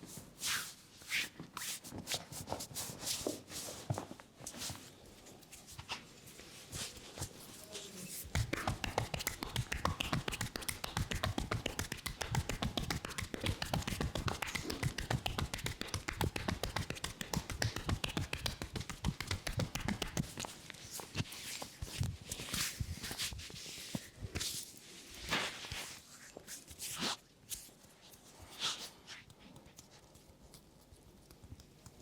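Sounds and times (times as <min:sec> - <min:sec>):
hands slapping body: 0:08.2 - 0:20.6.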